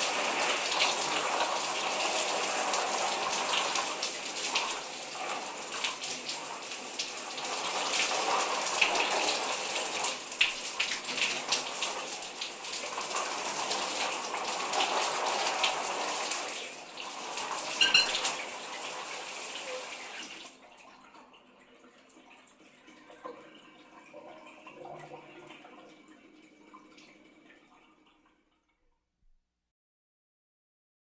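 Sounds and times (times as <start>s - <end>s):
shower water spraying: 0.0s - 20.4s.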